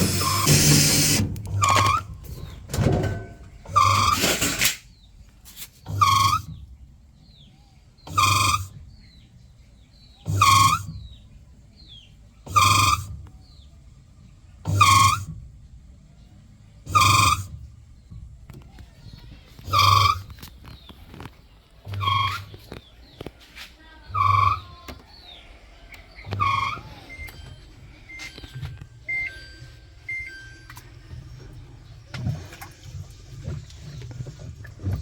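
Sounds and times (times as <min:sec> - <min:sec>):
washing machine humming and squeaking: 0:00.0 - 0:35.0
faint bird chirps: 0:18.8 - 0:23.3, 0:23.9 - 0:29.4.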